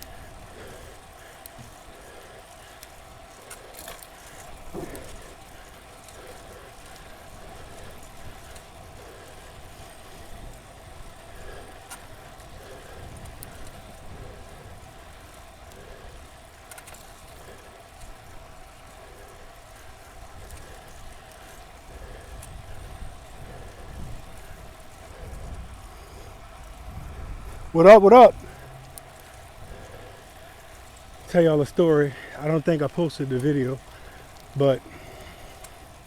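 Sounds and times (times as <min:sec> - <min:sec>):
heavy breathing: 0:00.0 - 0:31.3, 0:31.9 - 0:36.0
bicycle road rumble: 0:00.0 - 0:36.0
wind on microphone: 0:22.4 - 0:28.7.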